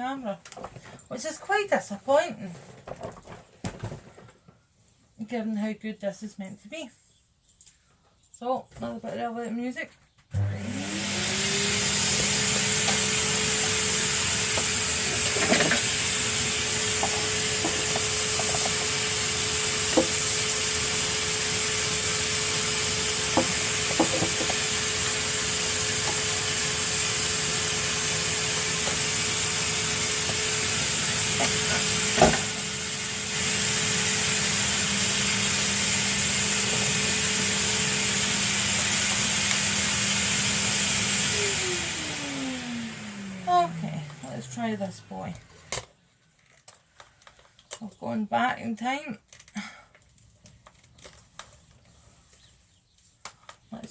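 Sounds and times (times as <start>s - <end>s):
vacuum cleaner motor whine: 10.3s - 45.8s.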